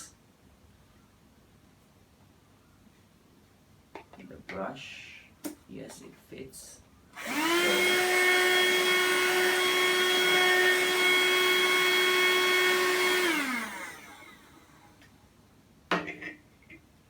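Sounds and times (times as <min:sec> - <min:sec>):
handheld vacuum cleaner running: 0:07.2 - 0:15.0.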